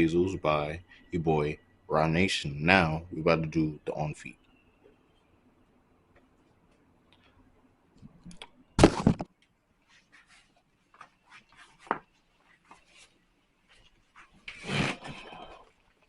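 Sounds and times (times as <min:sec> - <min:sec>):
faint scuffs: 0:09.8 - 0:15.2.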